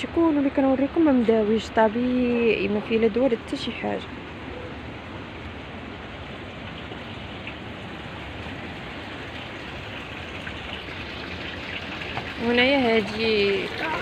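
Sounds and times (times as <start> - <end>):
water rushing in a channel: 0.0 - 14.0.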